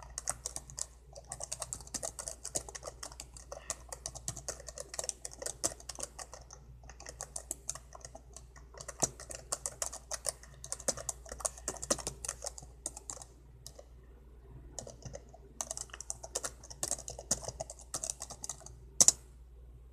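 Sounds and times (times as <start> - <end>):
laptop keyboard typing: 0.0 - 13.9, 14.7 - 19.3.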